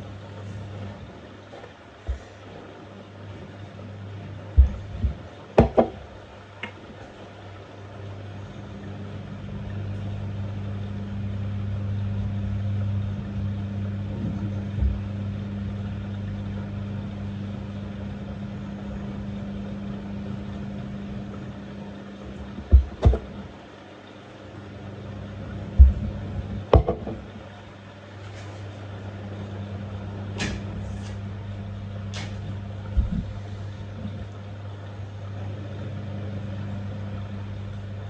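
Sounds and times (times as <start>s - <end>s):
washing machine humming: 0.0s - 38.0s
sharp knocks: 4.6s - 6.0s, 22.7s - 23.4s, 26.7s - 27.2s.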